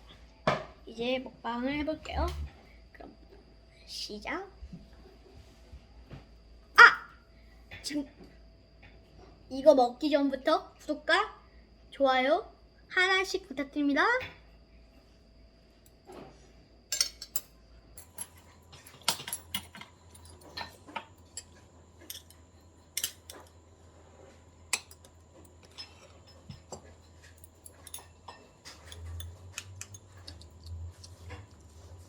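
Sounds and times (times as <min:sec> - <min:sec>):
utensils clicking against dishes: 0:18.2 - 0:22.4, 0:23.0 - 0:23.5, 0:24.7 - 0:31.7.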